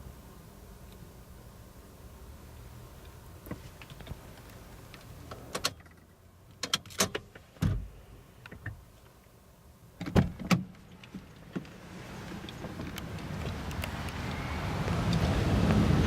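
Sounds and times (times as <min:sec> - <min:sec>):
low steady hum: 0:00.0 - 0:16.0
clicks and knocks in car cabin: 0:10.0 - 0:11.8.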